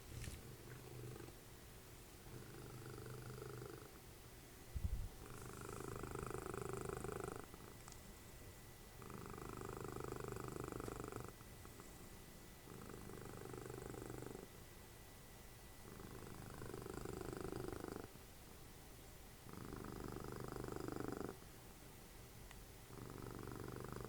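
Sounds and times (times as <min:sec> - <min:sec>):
cat purring: 0:00.0 - 0:01.4, 0:02.2 - 0:04.0, 0:04.8 - 0:08.1, 0:08.9 - 0:14.6, 0:15.8 - 0:18.2, 0:19.4 - 0:21.5, 0:22.9 - 0:24.0.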